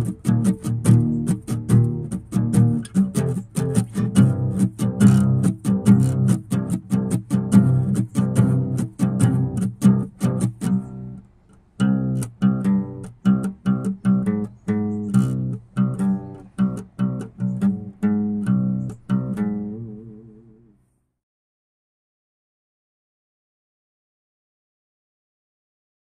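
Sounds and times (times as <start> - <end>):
plucked string music: 0.0 - 20.7.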